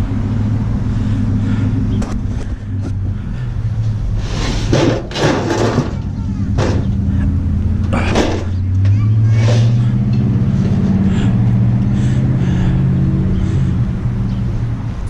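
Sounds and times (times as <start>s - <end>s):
vehicle engine running: 0.0s - 15.0s.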